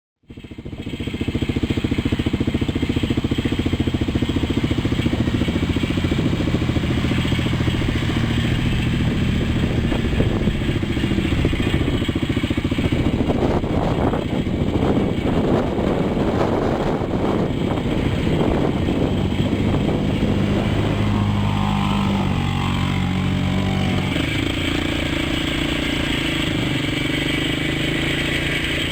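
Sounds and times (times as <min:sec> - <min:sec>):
quad bike engine running: 0:00.2 - 0:28.9.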